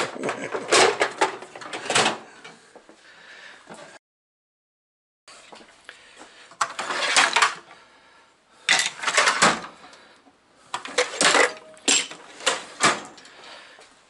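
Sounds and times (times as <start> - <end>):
hand tools clattering: 6.6 - 7.6, 8.7 - 9.7, 10.8 - 13.3.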